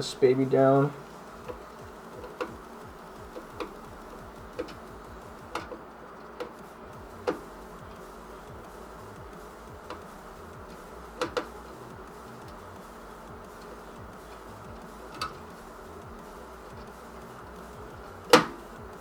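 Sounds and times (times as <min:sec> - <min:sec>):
faint steady hum: 0:00.0 - 0:19.0
screwdriver clicking on metal: 0:01.2 - 0:07.5, 0:09.6 - 0:12.6.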